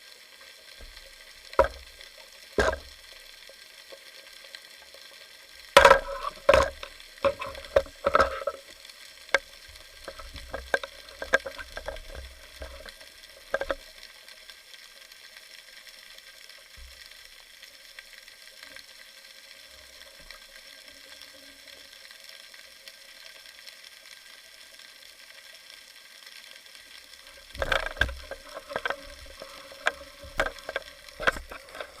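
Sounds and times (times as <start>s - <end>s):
faint steady hiss: 0.0s - 32.0s
underwater clicks: 0.8s - 3.2s, 5.7s - 14.0s, 27.3s - 32.0s.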